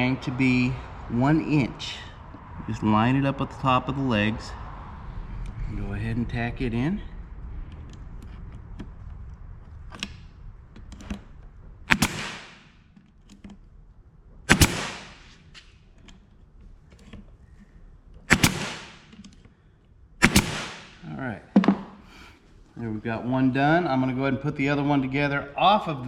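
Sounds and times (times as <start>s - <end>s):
handling clicks and knocks: 7.7s - 13.8s, 14.5s - 20.7s, 21.5s - 22.0s
nail gun firing into wood: 11.9s - 12.8s, 14.5s - 15.6s, 18.3s - 19.2s, 20.2s - 21.1s.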